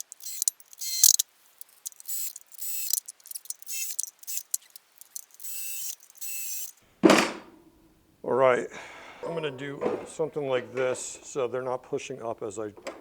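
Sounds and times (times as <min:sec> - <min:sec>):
power drill whirring: 0:00.0 - 0:01.2, 0:01.8 - 0:06.8.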